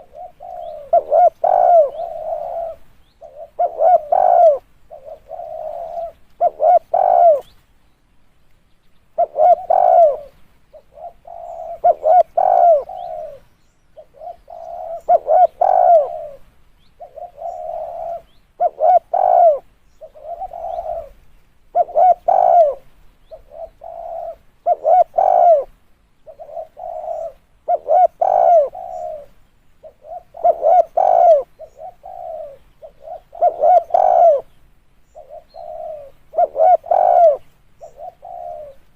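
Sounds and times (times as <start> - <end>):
dove cooing: 0.0 - 7.6, 9.1 - 38.9.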